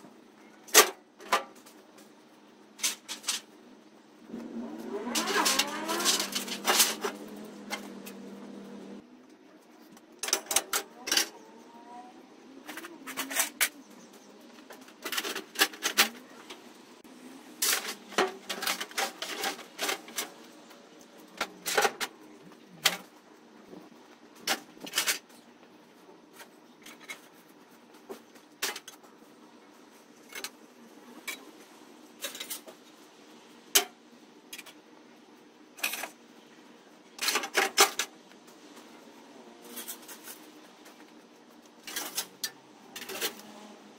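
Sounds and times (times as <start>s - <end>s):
scrap metal clanking: 4.8s - 8.4s, 17.6s - 20.4s.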